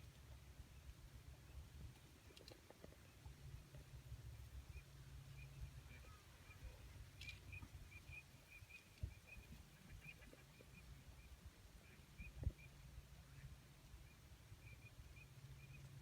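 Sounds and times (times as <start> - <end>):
distant bird calls: 4.5 - 16.0.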